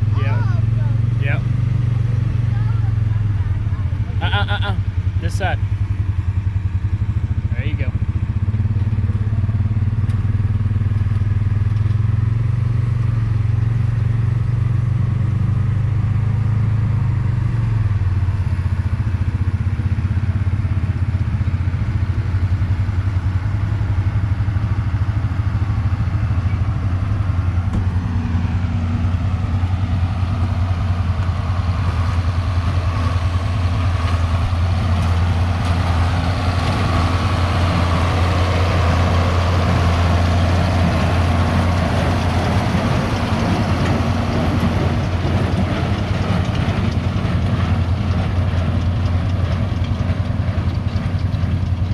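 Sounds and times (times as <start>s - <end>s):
tractor diesel engine under load: 0.0s - 51.9s
baler mechanical clatter: 41.6s - 51.9s.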